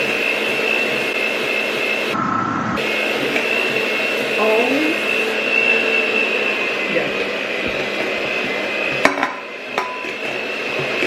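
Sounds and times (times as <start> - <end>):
electric mixer whining: 0.0 - 11.0.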